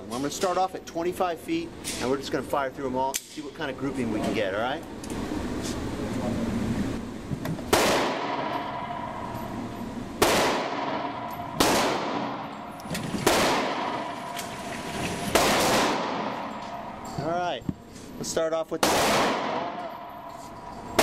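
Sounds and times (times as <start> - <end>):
gunshots: 7.7 - 8.8, 10.2 - 12.5, 13.1 - 16.6, 18.8 - 19.9.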